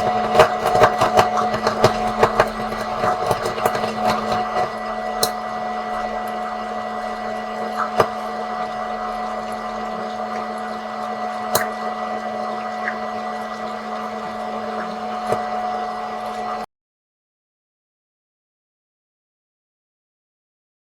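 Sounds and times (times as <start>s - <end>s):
popcorn kernels popping: 0.0s - 6.4s, 7.7s - 8.4s, 11.5s - 11.8s
popcorn machine motor hum: 0.0s - 16.7s.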